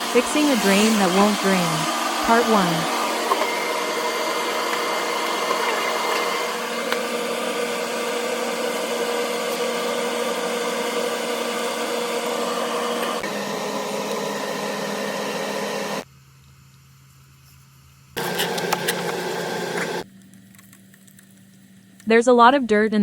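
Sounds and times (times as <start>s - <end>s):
machine whining over hiss: 0.0s - 16.0s.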